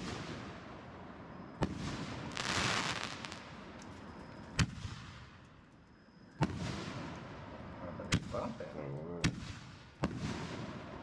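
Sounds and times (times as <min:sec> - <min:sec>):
fireworks bangs: 0:00.0 - 0:03.8, 0:06.4 - 0:08.6, 0:09.2 - 0:11.0
fireworks crackling hiss: 0:00.0 - 0:05.4.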